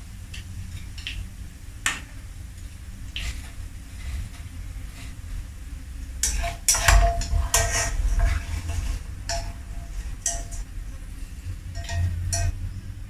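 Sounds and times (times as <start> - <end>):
metal utensil scraping frying pan: 3.0 - 5.5, 6.1 - 13.0.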